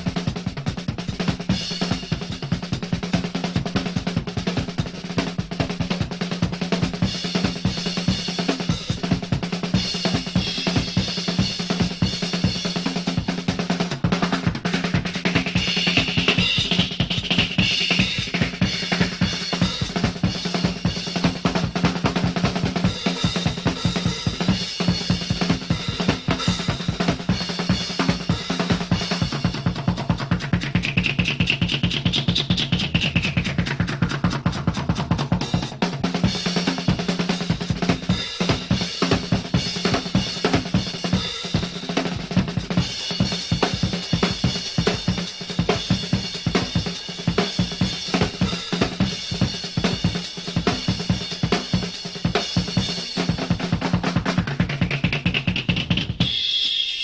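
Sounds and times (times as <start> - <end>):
fast drum kit beat: 0.0 - 57.0.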